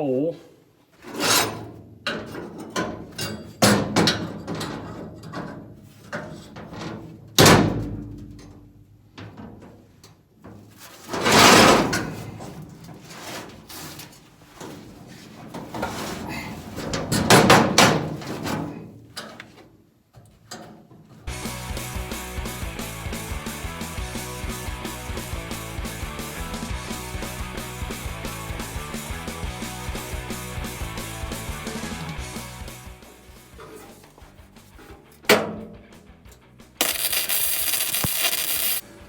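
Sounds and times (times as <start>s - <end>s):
metal clanks and knocks: 1.2s - 8.6s.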